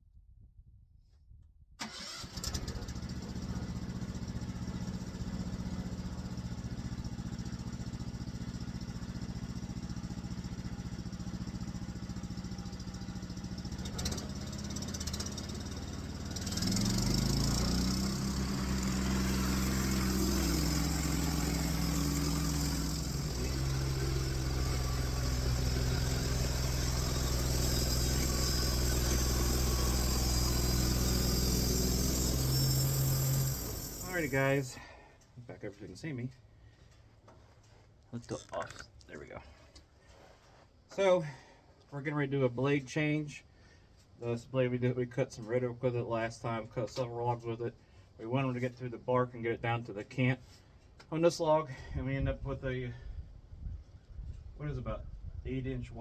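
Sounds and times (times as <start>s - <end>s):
small gasoline engine running: 1.9s - 34.6s.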